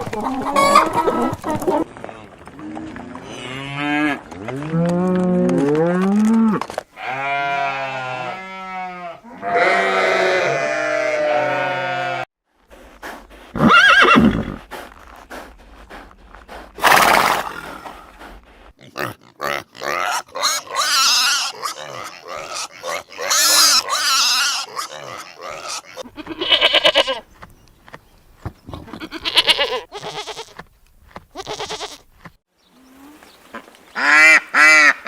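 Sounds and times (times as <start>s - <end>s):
horse snort: 12.7s - 20.0s
horse neighing: 13.6s - 14.6s
horse whinny: 13.6s - 14.6s.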